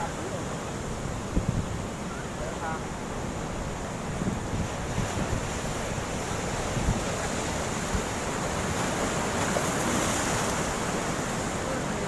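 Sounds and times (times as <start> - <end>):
sea waves washing onto shore: 0.0 - 12.0
wind rumbling on microphone: 0.9 - 12.0.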